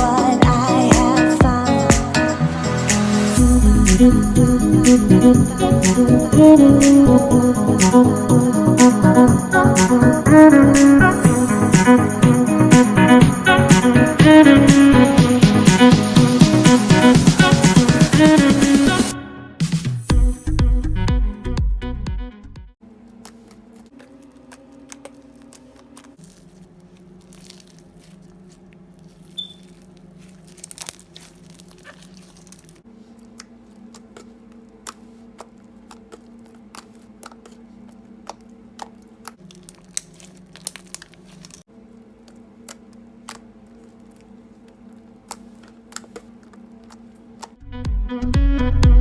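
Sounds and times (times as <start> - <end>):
low hum: 3.1 - 11.7
slime crackling and popping: 23.3 - 32.8, 38.2 - 41.7.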